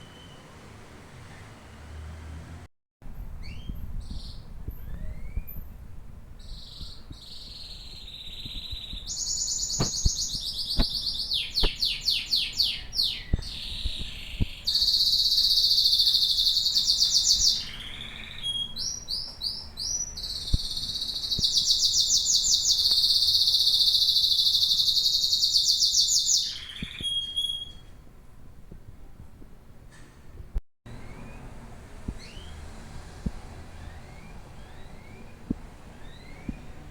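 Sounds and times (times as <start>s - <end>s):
canary singing trills: 3.4s - 5.8s, 6.4s - 27.9s, 30.9s - 32.7s, 33.8s - 36.9s.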